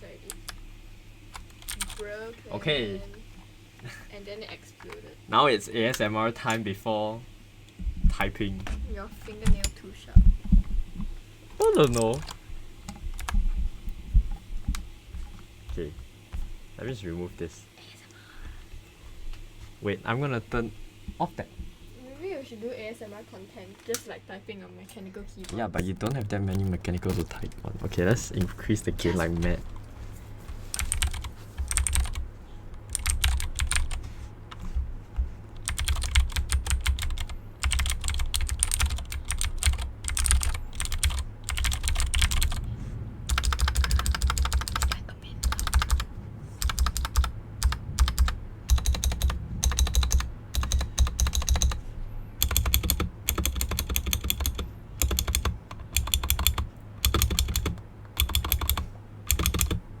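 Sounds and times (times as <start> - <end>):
mechanical keyboard typing: 1.4 - 2.1, 11.7 - 13.4, 25.5 - 27.6, 30.7 - 32.2, 32.8 - 34.7, 35.6 - 42.7, 43.3 - 51.8, 52.4 - 59.8.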